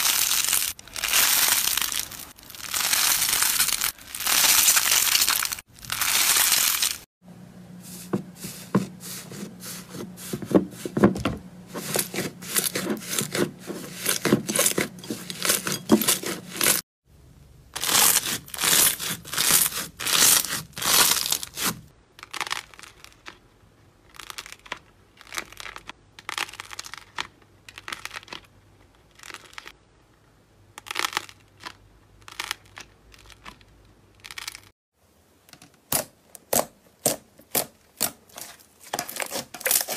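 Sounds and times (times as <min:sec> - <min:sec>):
slime crackling and popping: 0:00.0 - 0:07.1, 0:17.8 - 0:23.4, 0:24.0 - 0:29.8.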